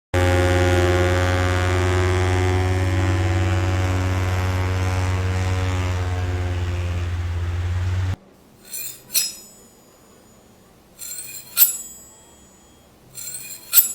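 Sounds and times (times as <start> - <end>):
loud low drone: 0.2 - 8.2.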